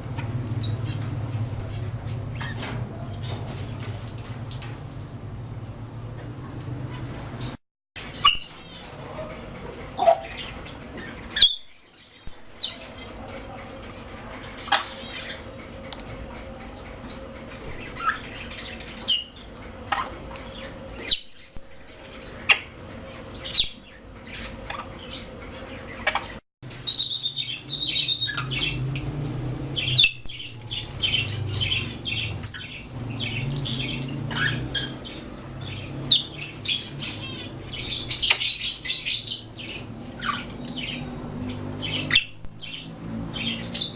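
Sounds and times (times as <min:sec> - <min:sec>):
parrots squawking and whistling: 0:02.3 - 0:02.8, 0:08.1 - 0:08.9, 0:09.9 - 0:11.8, 0:17.1 - 0:21.6, 0:22.3 - 0:29.0, 0:29.6 - 0:43.9.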